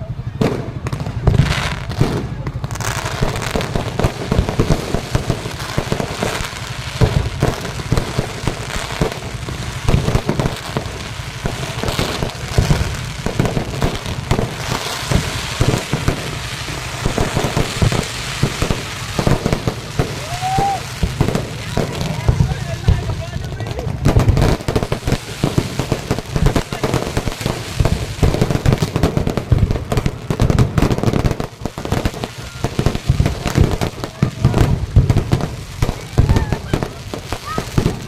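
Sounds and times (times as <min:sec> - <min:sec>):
fireworks bangs and crackles: 0:00.0 - 0:38.0.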